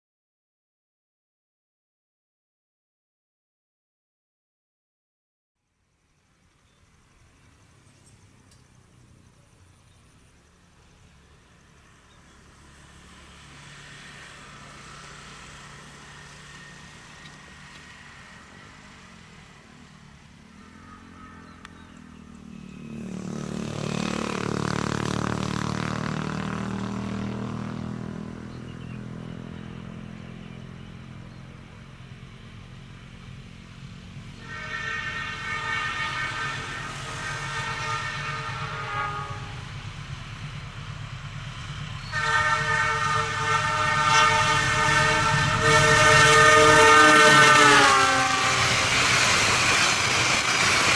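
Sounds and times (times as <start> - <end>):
train passing: 6.0 - 50.9
locomotive horn blast: 20.5 - 22.0, 34.3 - 39.9, 42.0 - 49.1.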